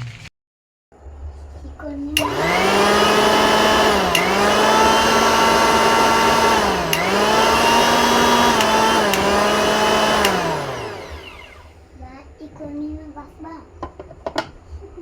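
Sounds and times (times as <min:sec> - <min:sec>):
mixer grinder motor whining: 0:02.2 - 0:11.8
mixer grinder winding down: 0:02.2 - 0:11.8.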